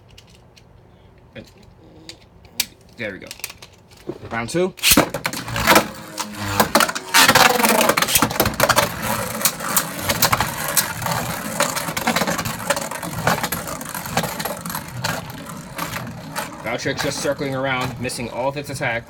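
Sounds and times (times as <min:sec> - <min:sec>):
spinning tops launched: 0:04.8 - 0:18.4
spinning tops whirring: 0:04.8 - 0:19.0.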